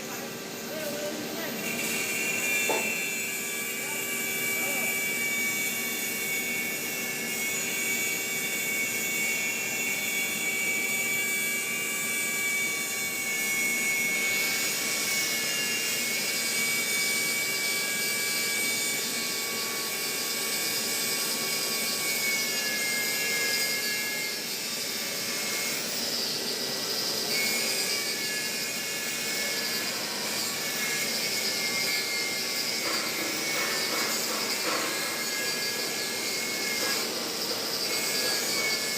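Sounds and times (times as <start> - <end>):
arc welding hiss: 0.0 - 3.0, 27.9 - 38.9.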